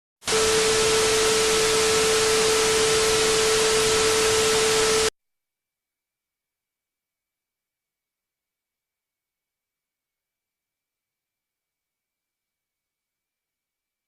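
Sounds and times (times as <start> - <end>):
loud static hiss: 0.2 - 5.1
steady mid-pitched tone: 0.3 - 5.1.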